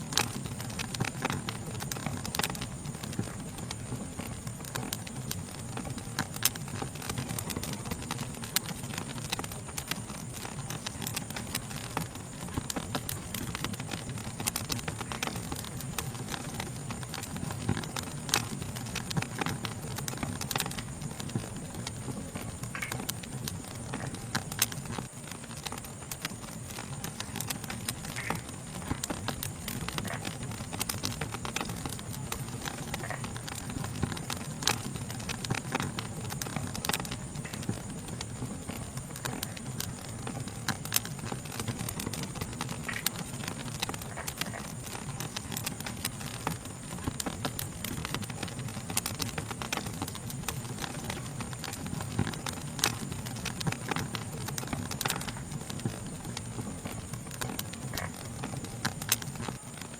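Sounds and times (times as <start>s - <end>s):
wood fire crackling and popping: 0.0s - 59.9s
high-pitched insect chorus: 20.3s - 58.7s.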